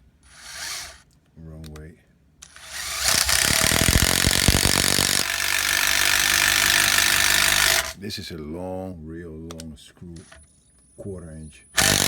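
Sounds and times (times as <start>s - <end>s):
impact screwdriver driving screw: 0.3s - 1.0s, 2.4s - 8.0s, 11.8s - 12.0s.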